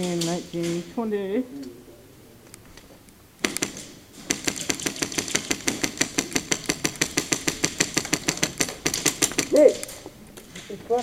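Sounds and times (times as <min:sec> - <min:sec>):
airsoft rifle firing: 0:03.4 - 0:10.0.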